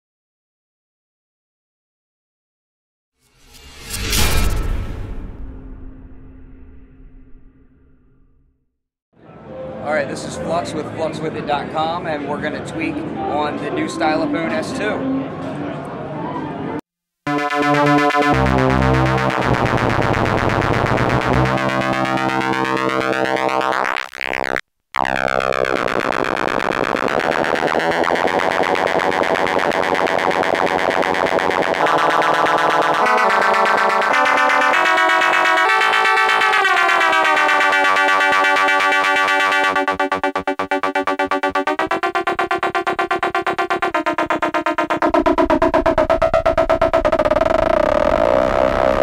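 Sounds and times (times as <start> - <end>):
buzzy synthesizer tone: 17.3 - 49.0.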